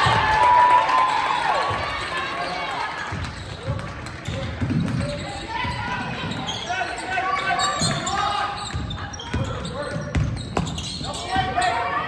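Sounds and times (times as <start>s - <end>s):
spectators cheering and shouting: 0.0s - 3.9s.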